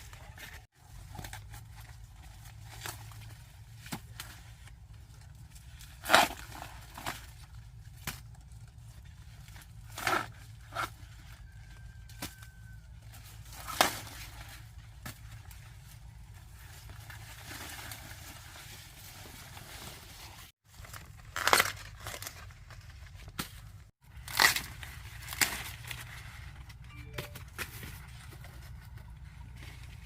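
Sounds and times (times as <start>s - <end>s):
corn ears snapped off stalks: 24.2s - 25.9s.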